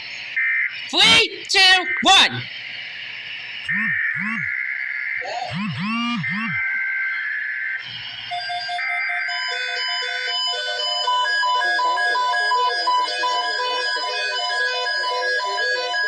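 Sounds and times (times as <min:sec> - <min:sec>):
buzzy data-burst tones: 0:00.0 - 0:16.0
tinkling electronic melody: 0:08.3 - 0:16.0.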